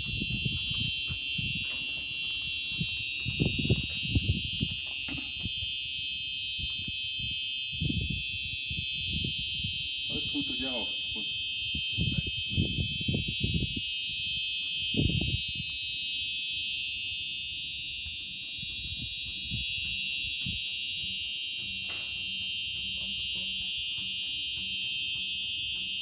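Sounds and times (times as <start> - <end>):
fire alarm high-pitched tone: 0.0 - 26.0.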